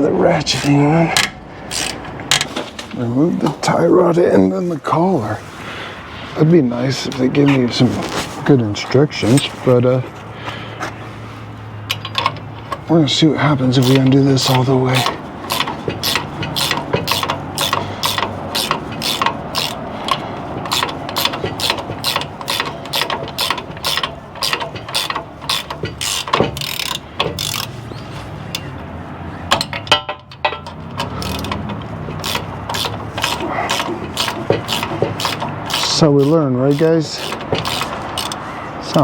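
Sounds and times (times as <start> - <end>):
hand ratchet clicking: 0.6 - 2.5, 11.8 - 28.9, 29.5 - 39.0.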